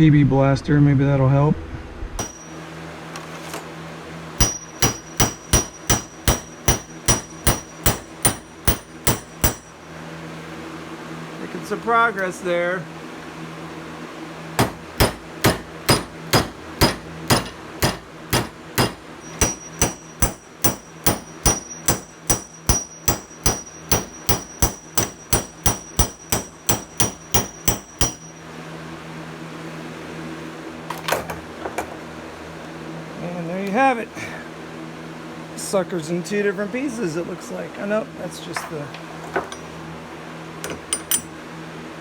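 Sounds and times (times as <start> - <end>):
hammer striking steel punch: 2.2 - 2.6, 4.4 - 9.8, 14.6 - 28.4, 40.7 - 41.3
high metallic ring: 2.2 - 2.6, 4.4 - 10.0, 14.6 - 28.6, 40.7 - 41.4.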